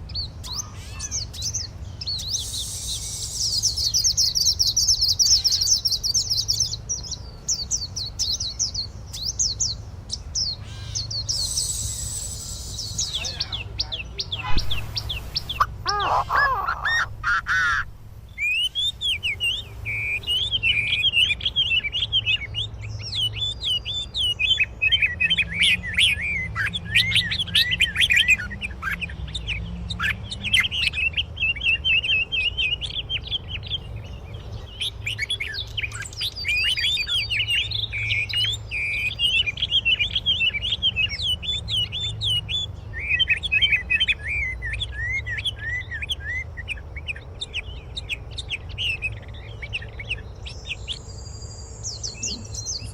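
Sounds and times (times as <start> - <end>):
songbirds chirping and singing: 0.0 - 52.9
steady low rumble: 14.2 - 18.5.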